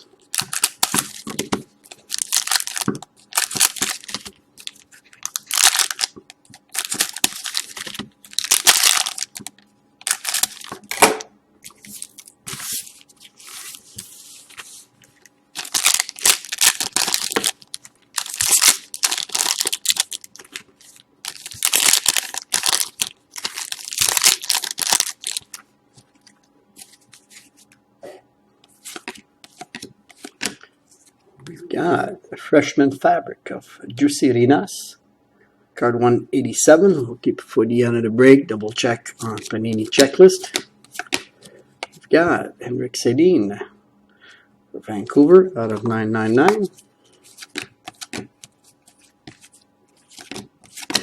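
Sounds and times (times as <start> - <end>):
card packs tearing and crinkling: 0.3 - 14.6, 15.6 - 25.6, 46.5 - 51.0.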